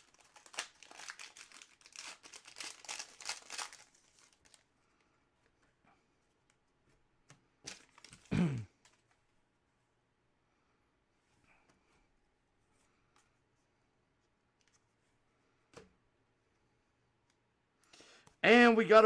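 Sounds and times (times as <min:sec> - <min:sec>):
foil wrapper torn and crinkled: 0:00.0 - 0:04.6.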